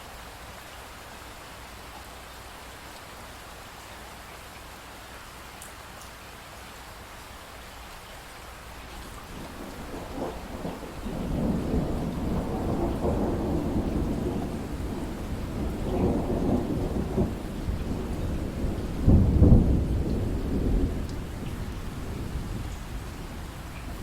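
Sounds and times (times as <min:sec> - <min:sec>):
steady rain: 0:00.0 - 0:24.0
thunder rumbling: 0:09.0 - 0:24.0.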